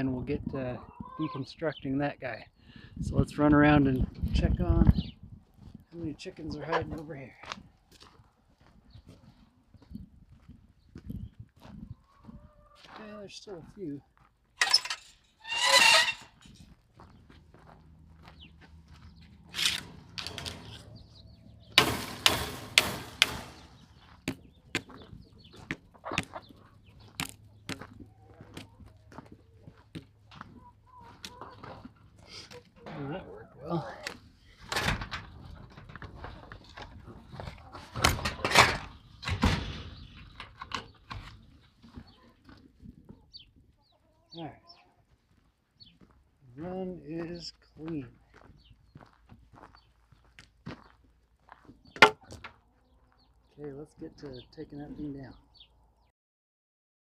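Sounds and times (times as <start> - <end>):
chickens clucking and squawking: 0.0 - 3.0, 4.9 - 14.0, 14.6 - 34.7, 35.3 - 46.0
knocks and rattles: 14.6 - 16.2, 21.7 - 25.0.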